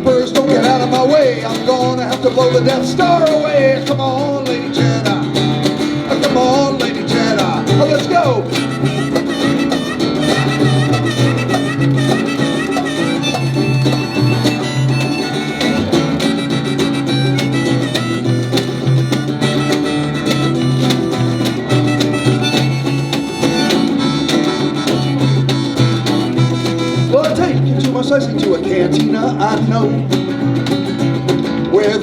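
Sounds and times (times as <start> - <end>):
drums: 0.0 - 32.0
pulsing bass line: 0.6 - 31.9
wavering lead melody: 8.4 - 27.2.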